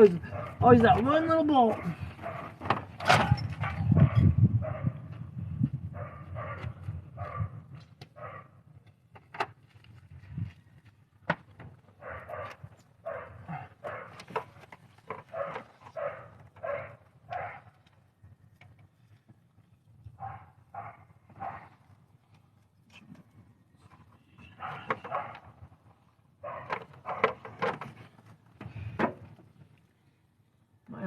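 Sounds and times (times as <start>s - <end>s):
dog barking: 0.2s - 0.6s, 1.7s - 2.6s, 3.6s - 5.0s, 6.0s - 7.5s, 8.2s - 8.5s, 12.0s - 14.2s, 15.3s - 17.7s, 20.2s - 21.7s, 24.6s - 25.5s, 26.4s - 27.4s.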